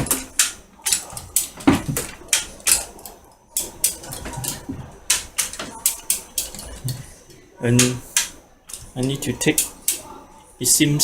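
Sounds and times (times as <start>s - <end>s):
hoist mechanical clicks and knocks: 0.0s - 7.0s.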